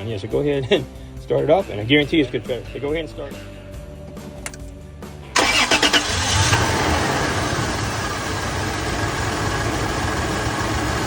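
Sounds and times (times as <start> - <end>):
car engine starting and idling: 4.4 - 11.0.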